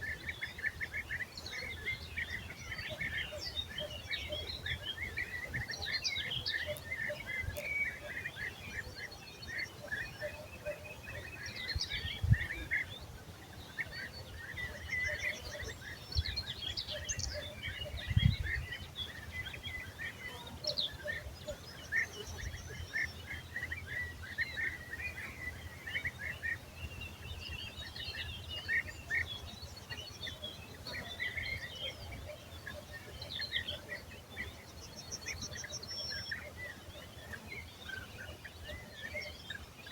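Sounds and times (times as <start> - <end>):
small birds chirping and trilling: 0.0 - 39.9.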